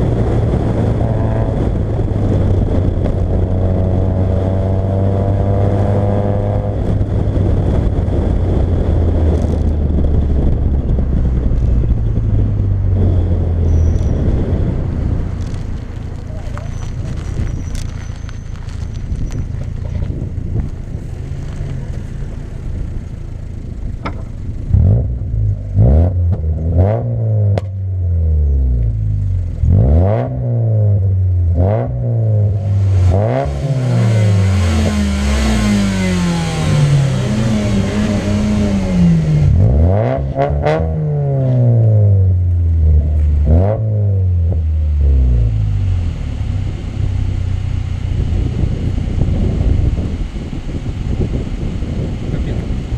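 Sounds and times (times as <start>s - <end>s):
car engine revving hard: 0.0s - 9.3s, 24.6s - 28.8s, 29.5s - 47.1s
sharp exhaust cracks: 6.6s - 27.8s.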